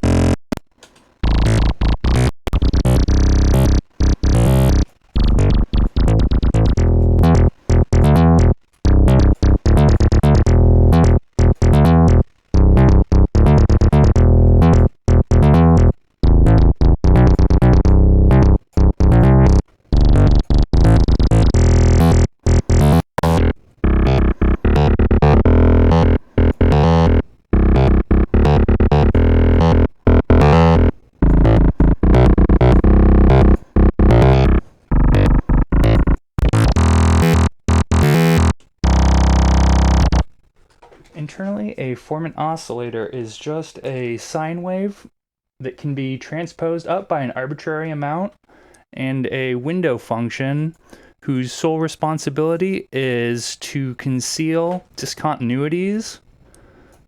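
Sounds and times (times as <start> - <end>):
synthesizer playing pounding tones: 0.0 - 0.5, 1.2 - 40.3.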